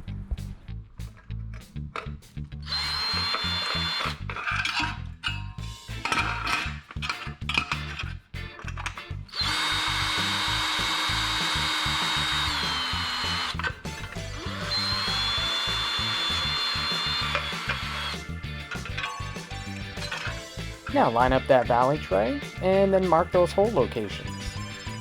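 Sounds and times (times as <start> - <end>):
power drill whining: 2.6 - 4.6, 9.3 - 19.1
background music with steady beat: 5.6 - 25.0.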